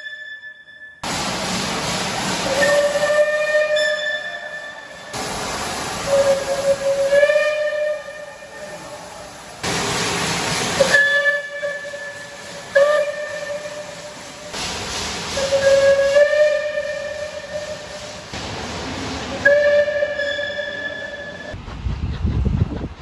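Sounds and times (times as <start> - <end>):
steam hissing: 1.0 - 23.0
steam locomotive whistle: 2.3 - 9.2, 10.6 - 14.5, 15.3 - 18.4, 19.3 - 21.6.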